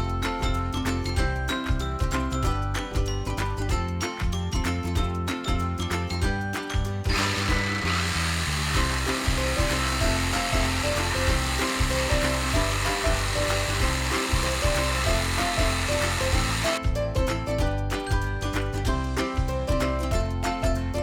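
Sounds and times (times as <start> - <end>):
background music with bass: 0.0 - 21.0
tool rasping on wood: 7.1 - 16.8.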